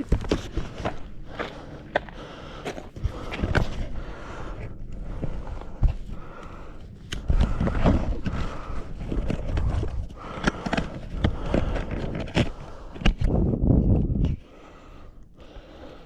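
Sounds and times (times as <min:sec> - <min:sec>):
boots and hands scraping rock: 0:00.0 - 0:14.4
microphone handling rumble: 0:10.9 - 0:14.4.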